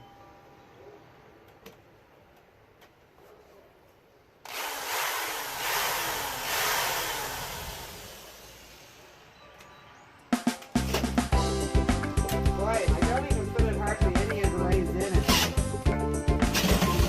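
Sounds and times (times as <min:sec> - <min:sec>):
power drill boring: 0:04.5 - 0:09.0.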